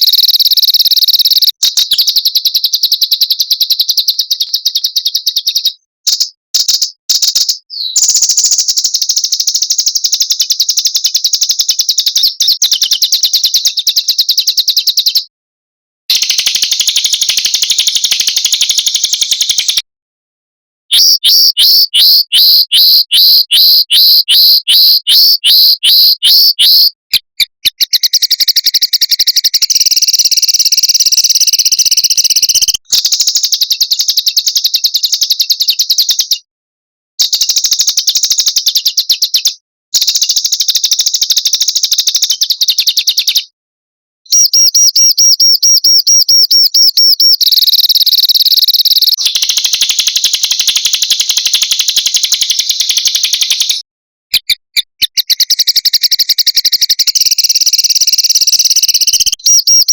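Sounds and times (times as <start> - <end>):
loud repeated bird chirps: 0.0 - 15.3, 16.1 - 19.9, 20.9 - 36.5, 37.2 - 43.6, 44.3 - 59.9
songbird trills: 0.0 - 15.3, 20.9 - 27.0.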